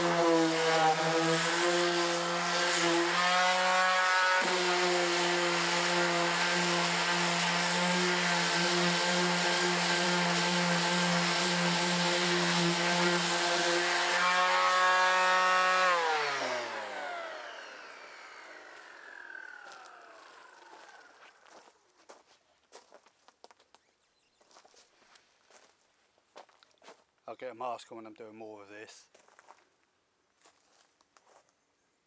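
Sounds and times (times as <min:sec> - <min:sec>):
power tool motor running: 0:00.0 - 0:21.5.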